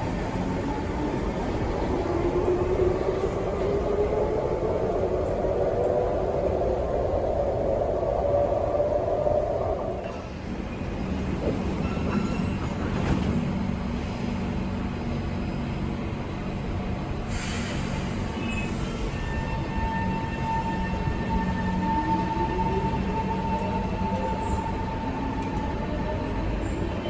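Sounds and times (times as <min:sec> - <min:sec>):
train low rumble: 0:00.0 - 0:27.0
air brake hiss: 0:17.2 - 0:19.4.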